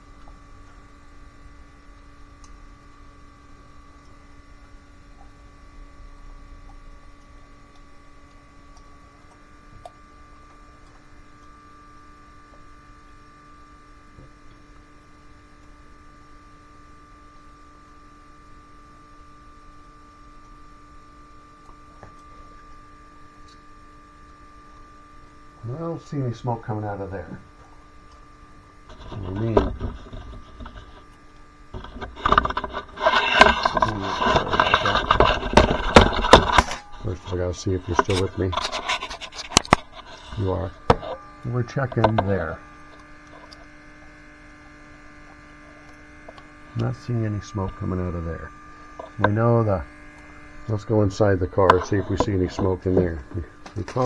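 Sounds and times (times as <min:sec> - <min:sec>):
faint steady hum: 0:00.0 - 0:54.0
faint ticks: 0:00.1 - 0:48.0
rubbing and scraping with clicks: 0:26.4 - 0:54.0.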